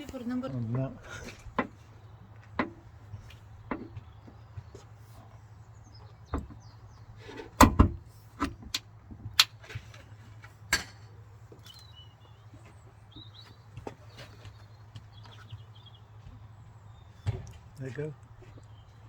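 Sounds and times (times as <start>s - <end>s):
tailgate strut knocks and clicks: 2.4s - 4.3s, 6.0s - 10.0s.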